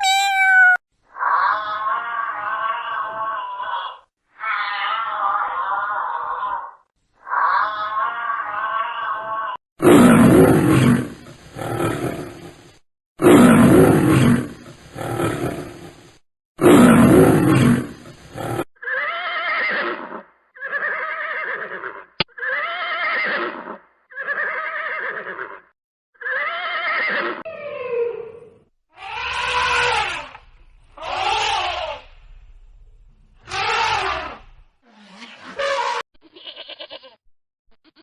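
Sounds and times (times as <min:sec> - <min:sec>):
short wavering animal calls: 0:00.0 - 0:00.8
loud rough animal calls: 0:29.0 - 0:32.2, 0:33.4 - 0:36.0.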